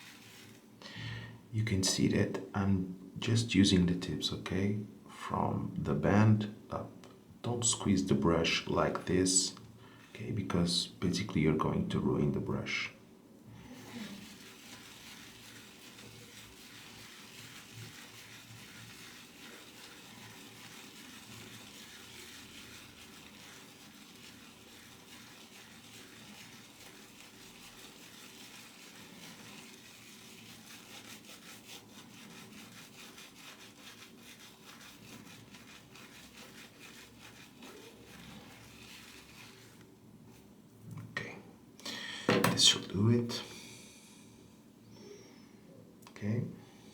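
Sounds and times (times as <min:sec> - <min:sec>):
brush scrubbing shaving soap: 0:00.0 - 0:00.8, 0:13.6 - 0:40.6.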